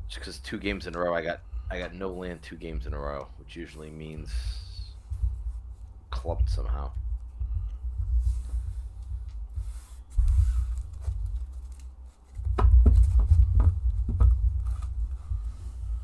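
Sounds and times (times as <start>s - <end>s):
cards tapping and sliding: 7.6s - 15.2s.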